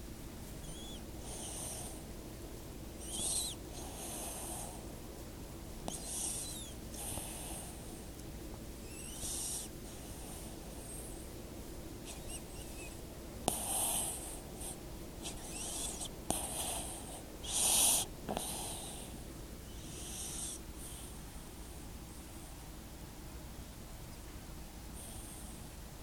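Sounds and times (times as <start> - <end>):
wheezy snoring: 3.0 - 4.8, 5.9 - 7.8, 13.5 - 19.1, 19.8 - 21.1.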